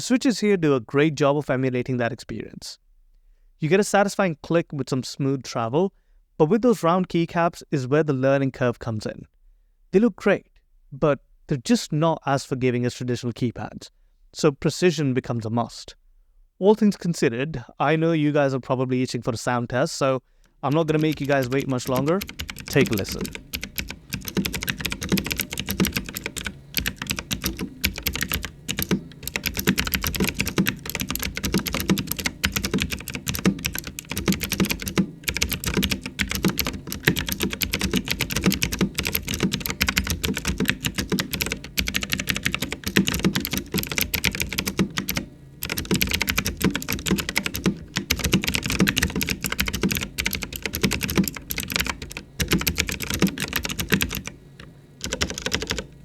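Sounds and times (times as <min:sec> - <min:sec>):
typing on mechanical keyboard: 0:20.7 - 0:56.0.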